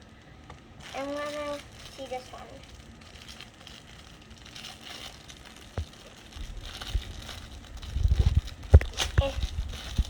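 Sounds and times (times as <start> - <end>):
plastic packaging crinkling: 0.0 - 10.0.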